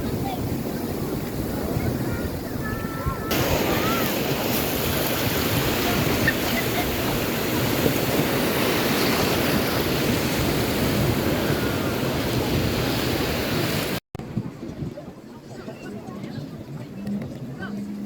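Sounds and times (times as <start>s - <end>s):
ocean surf on a beach: 0.0s - 14.4s.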